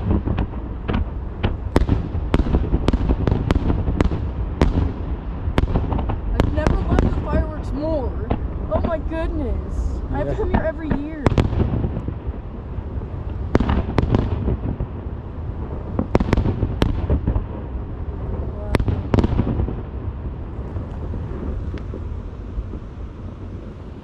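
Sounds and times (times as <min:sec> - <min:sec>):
fireworks bangs: 0:00.0 - 0:24.0
low rumble: 0:00.0 - 0:24.0.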